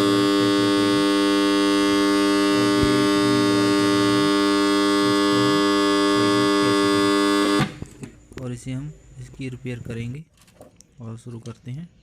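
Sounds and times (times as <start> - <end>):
motor starter electrical hum: 0.0 - 8.9.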